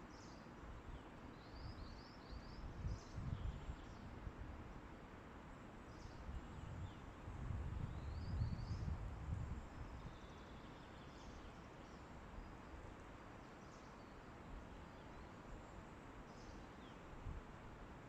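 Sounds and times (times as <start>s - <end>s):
wind in a forest: 0.0s - 18.0s
wind gusting on microphone: 2.5s - 4.6s, 6.2s - 10.1s.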